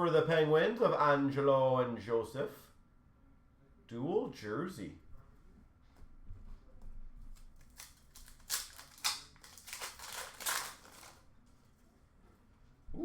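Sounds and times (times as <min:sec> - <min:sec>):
foil wrappers tearing and rustling: 0:07.3 - 0:11.2.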